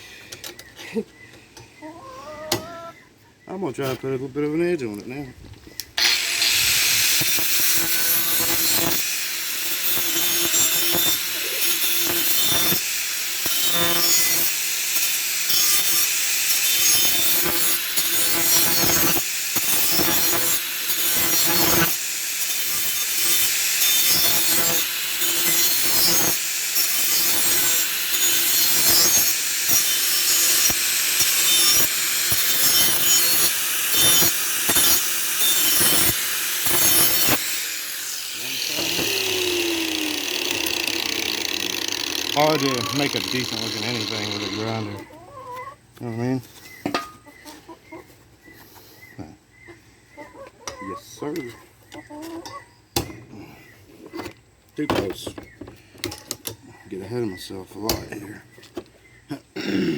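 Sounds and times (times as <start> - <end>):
power grinder grinding metal: 6.0 - 45.1.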